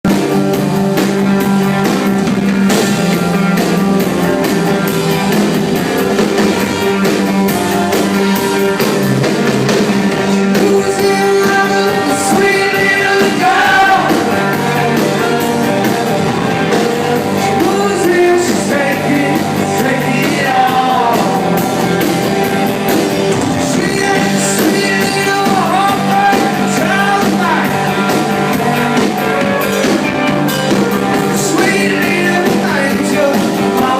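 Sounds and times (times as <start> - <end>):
rock band playing: 0.0 - 33.9
person singing: 10.2 - 15.5, 16.7 - 22.0, 23.3 - 29.4, 31.0 - 33.9.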